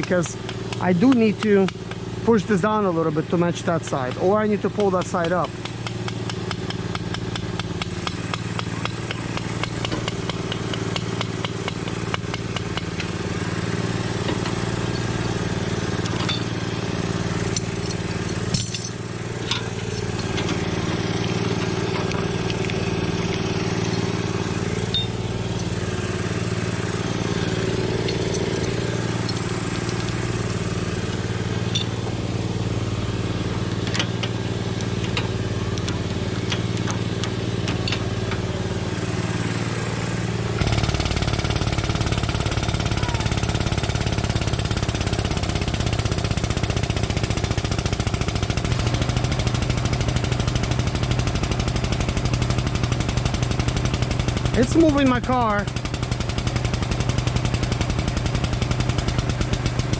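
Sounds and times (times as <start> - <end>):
motor running steadily: 0.0 - 59.9
sharp metallic clinks: 16.0 - 16.6, 17.4 - 20.6, 24.8 - 25.8, 27.4 - 30.3, 31.6 - 32.0.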